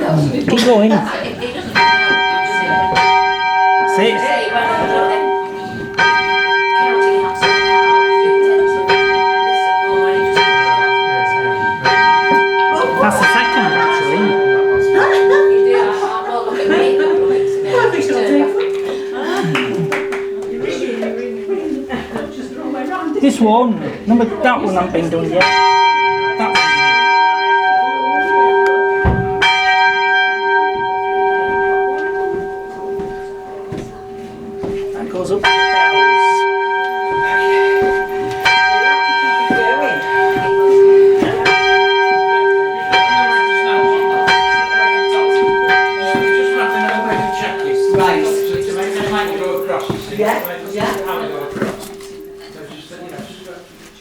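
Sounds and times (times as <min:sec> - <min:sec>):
church bell ringing: 0:00.0 - 0:53.9
dull knock: 0:29.0 - 0:29.4.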